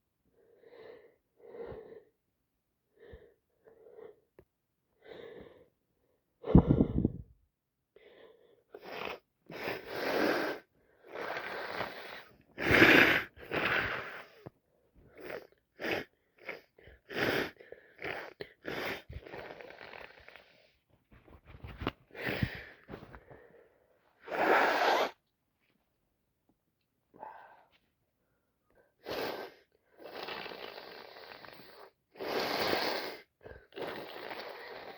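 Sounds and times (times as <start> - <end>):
person breathing: 6.4 - 7.3, 21.6 - 25.1, 27.1 - 29.7
person sniffling: 24.2 - 25.2.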